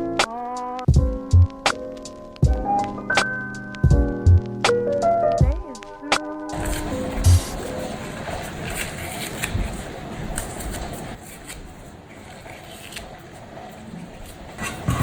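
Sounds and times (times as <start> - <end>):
rustling: 6.4 - 15.0.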